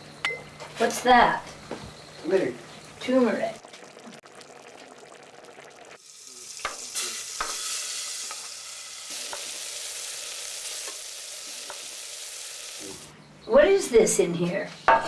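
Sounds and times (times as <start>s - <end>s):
food sizzling in a pan: 2.2s - 13.1s.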